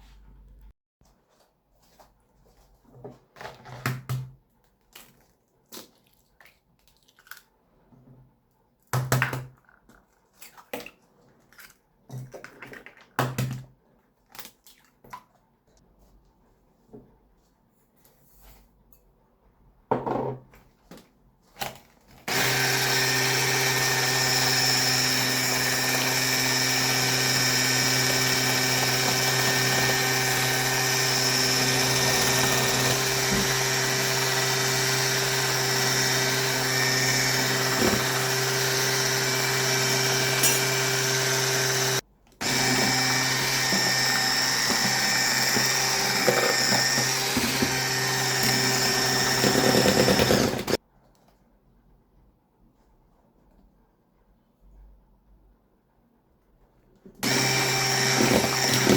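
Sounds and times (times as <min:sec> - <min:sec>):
electric mixer motor whine: 0:22.3 - 0:50.8, 0:57.2 - 0:58.9.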